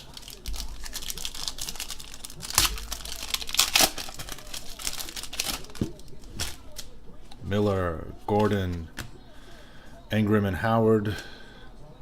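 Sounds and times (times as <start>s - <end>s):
cards rustling and clicking: 0.0s - 6.9s.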